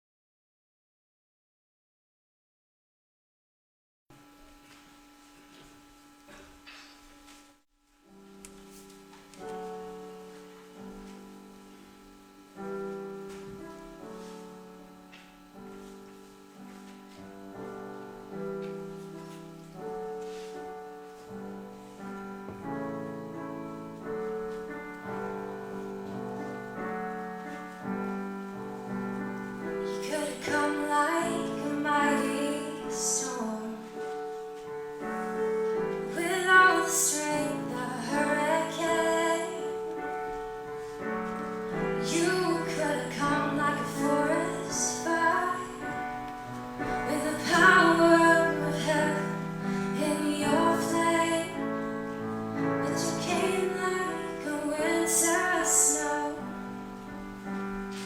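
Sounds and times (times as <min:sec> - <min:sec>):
piano sustained chords: 0:08.1 - 0:58.0
woman singing: 0:29.7 - 0:34.1, 0:36.0 - 0:40.0, 0:41.8 - 0:46.1, 0:46.9 - 0:52.0, 0:52.6 - 0:56.6.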